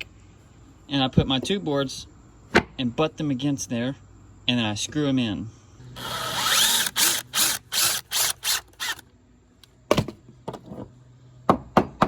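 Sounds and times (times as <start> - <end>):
fast sharp clicks: 6.0 - 9.0
power driver driving screws: 6.0 - 9.0.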